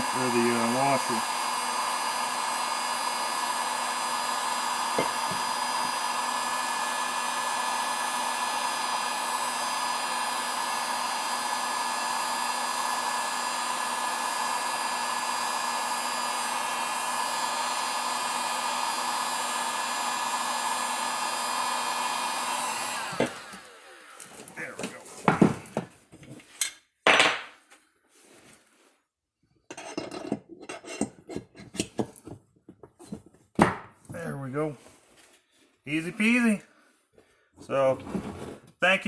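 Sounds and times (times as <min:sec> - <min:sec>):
heat gun blowing with whine: 0:00.0 - 0:24.9.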